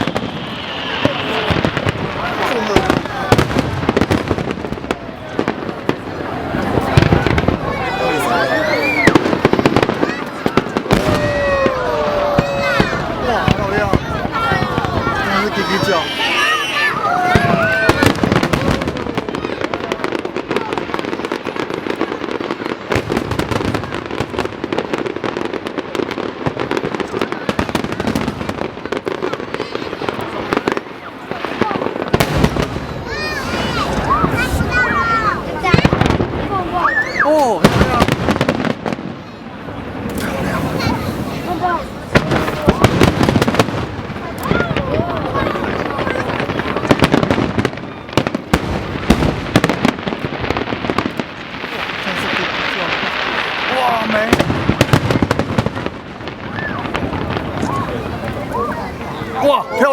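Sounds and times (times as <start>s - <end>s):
steady rumbling haze: 0.0s - 3.3s
fireworks crackling and banging: 0.0s - 59.9s.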